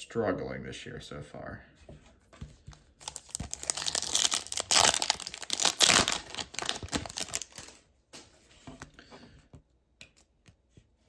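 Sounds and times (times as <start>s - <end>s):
foil wrapper tearing and crinkling: 3.0s - 7.8s.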